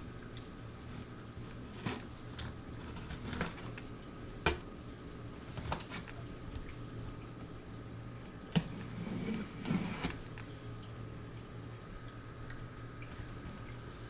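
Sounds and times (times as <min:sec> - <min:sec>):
steady low hum: 0:00.0 - 0:14.0
cardboard box rustling and scraping: 0:08.9 - 0:10.2.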